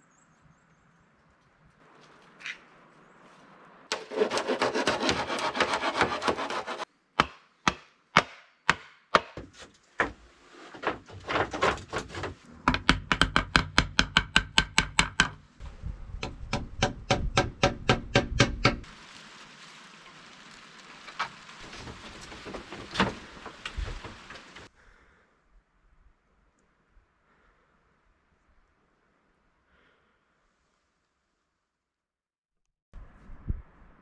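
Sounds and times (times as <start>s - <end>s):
hand saw rasping on wood: 3.9s - 6.9s
sharp knocks on wood: 7.2s - 10.2s, 12.7s - 15.4s, 16.2s - 18.8s.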